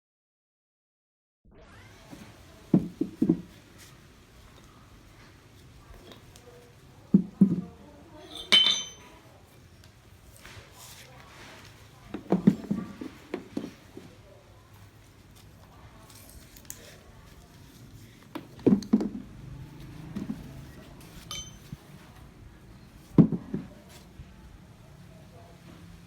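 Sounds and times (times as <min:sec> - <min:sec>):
ringing metal clink: 0:08.2 - 0:09.2, 0:21.3 - 0:21.7
metal objects knocking: 0:08.4 - 0:09.0, 0:21.3 - 0:21.7.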